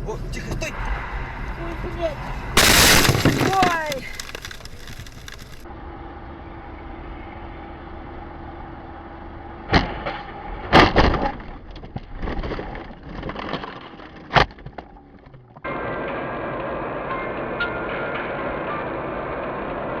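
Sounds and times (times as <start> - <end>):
rattling and clattering: 2.6 - 5.6
vehicle collision crash: 2.6 - 5.6
vehicle drone: 5.2 - 10.7, 15.7 - 20.0.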